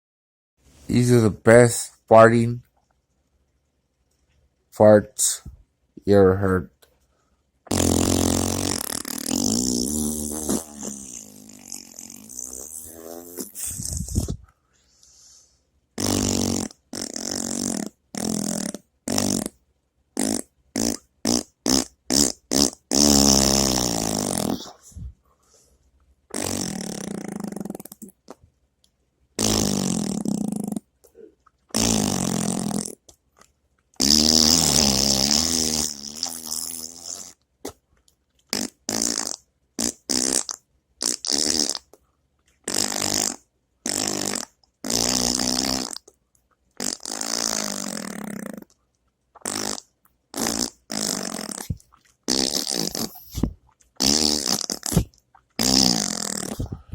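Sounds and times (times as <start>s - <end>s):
farts: 7.7s - 14.4s, 16.0s - 19.6s, 20.2s - 24.9s, 26.3s - 28.2s, 29.4s - 30.9s, 31.7s - 33.0s, 34.0s - 37.8s, 38.5s - 42.0s, 42.6s - 46.1s, 46.8s - 48.8s, 49.4s - 56.9s.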